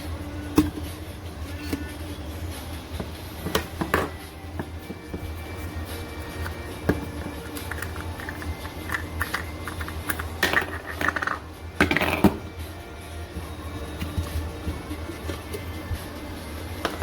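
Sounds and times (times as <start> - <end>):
steady low hum: 0.0 - 17.0
kitchenware clinking and clattering: 3.4 - 4.7, 6.4 - 12.6.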